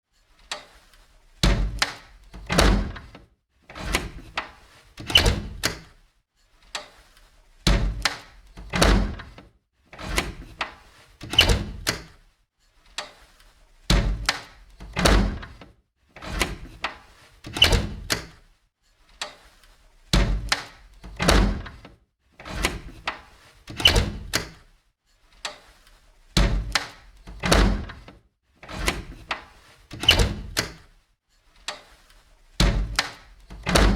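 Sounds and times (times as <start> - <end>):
door latch clicks and knocks: 1.4 - 3.1, 5.0 - 5.9, 7.7 - 9.4, 11.2 - 12.1, 13.9 - 15.6, 17.5 - 18.4, 20.2 - 21.8, 22.5 - 24.6, 26.4 - 30.8, 32.6 - 33.9
door shutting with a thud: 1.4 - 3.2, 5.0 - 5.9, 7.7 - 9.4, 11.2 - 12.1, 13.9 - 15.6, 17.5 - 18.4, 20.1 - 21.9, 22.5 - 24.6, 26.4 - 30.8, 32.6 - 33.9.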